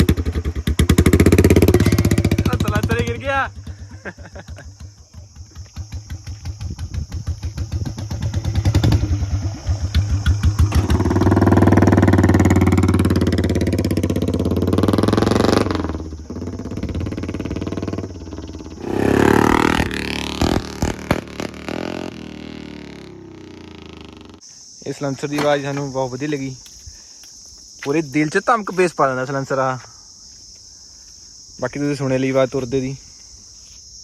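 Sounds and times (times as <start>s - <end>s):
motorcycle engine revving: 0.0s - 24.4s.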